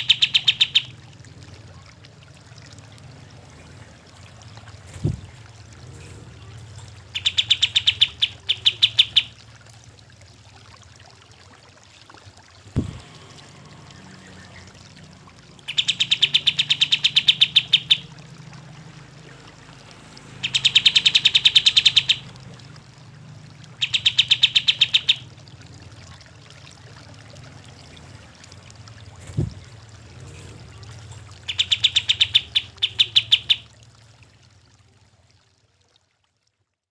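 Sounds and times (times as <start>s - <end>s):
bird chattering: 0.0s - 0.9s, 7.1s - 9.4s, 15.6s - 18.1s, 20.4s - 22.3s, 23.8s - 25.3s, 31.4s - 33.6s.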